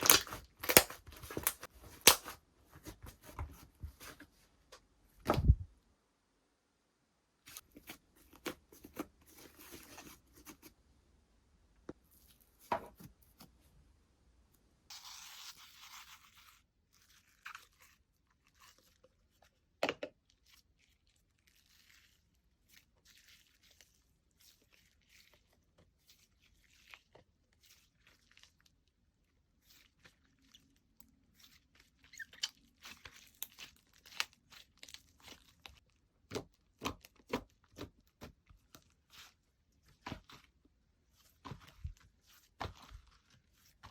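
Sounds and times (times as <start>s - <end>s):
slime crackling and popping: 0.0s - 2.4s.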